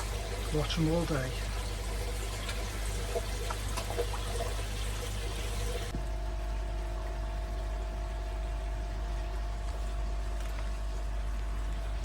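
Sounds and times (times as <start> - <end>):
water trickling and splashing: 0.0 - 6.2
mechanical hum: 0.0 - 12.0.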